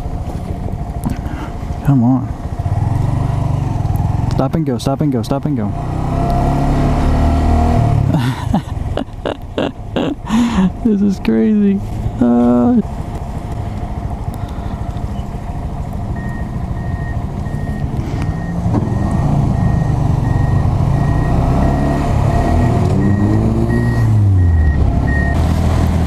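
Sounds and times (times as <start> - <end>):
motorcycle engine revving: 0.0 - 4.7, 5.3 - 9.0, 11.9 - 26.0
reversing alarm beeping: 16.1 - 25.4.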